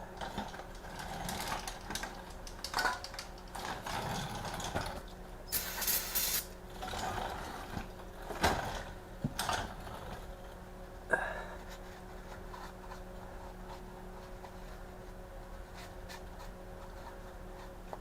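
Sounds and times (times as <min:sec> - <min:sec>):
torque wrench ratcheting: 0:05.5 - 0:06.5.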